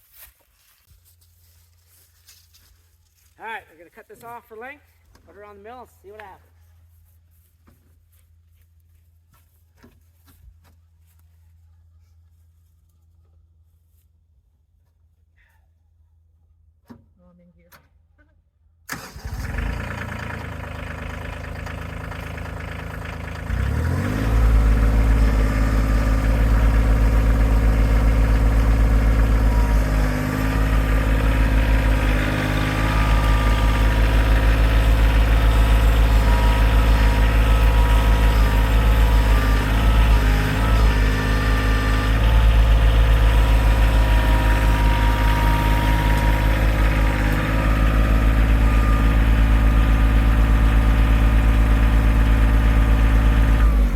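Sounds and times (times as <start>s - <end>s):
tractor diesel engine idling: 18.9s - 53.9s.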